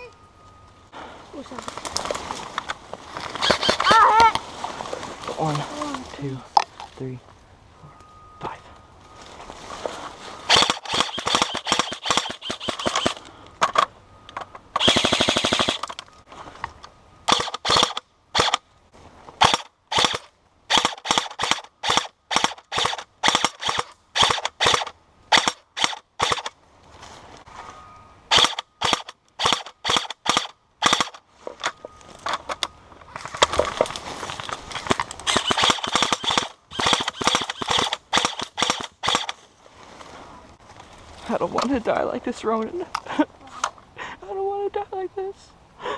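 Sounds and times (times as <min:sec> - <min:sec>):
rapid full-auto burst: 0:03.4 - 0:03.9, 0:10.5 - 0:13.2, 0:14.8 - 0:15.9, 0:17.3 - 0:18.6, 0:19.4 - 0:26.5, 0:28.3 - 0:31.2, 0:35.2 - 0:39.3
airsoft guns firing: 0:10.5 - 0:13.2, 0:14.8 - 0:15.9, 0:17.3 - 0:18.6, 0:19.4 - 0:26.5, 0:28.3 - 0:31.2, 0:35.3 - 0:39.4.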